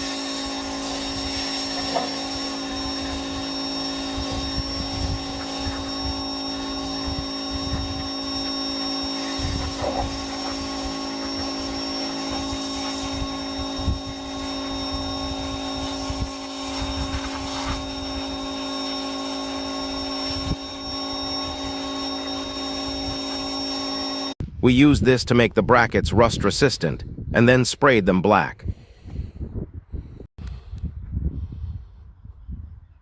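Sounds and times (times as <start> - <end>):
power tool motor humming: 0.0 - 24.4.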